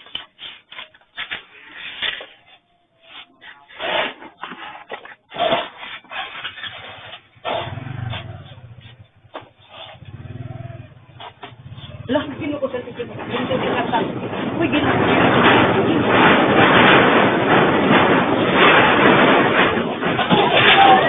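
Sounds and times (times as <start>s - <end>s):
shelves and goods rattling: 0.0s - 21.0s
low earthquake rumble: 6.8s - 20.3s.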